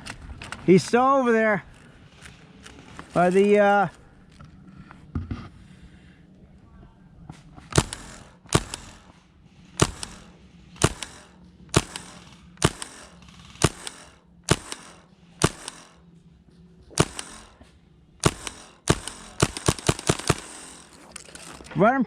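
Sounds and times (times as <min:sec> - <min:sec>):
airsoft gun shots: 0:07.7 - 0:09.1, 0:09.8 - 0:16.0, 0:16.9 - 0:20.9.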